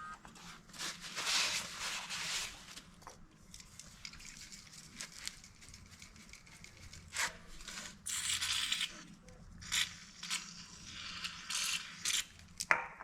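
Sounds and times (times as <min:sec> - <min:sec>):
rustling and scraping of car parts: 0:00.3 - 0:03.0.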